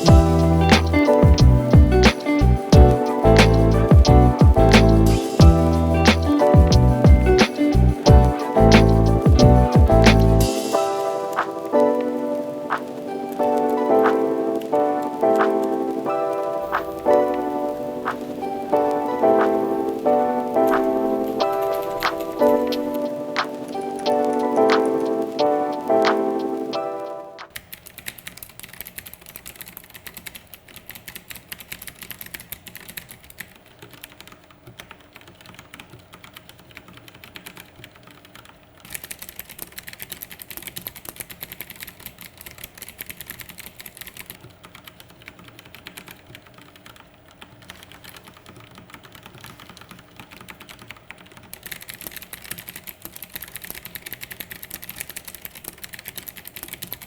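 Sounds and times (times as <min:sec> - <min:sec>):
mechanical keyboard typing: 0:00.0 - 0:57.0.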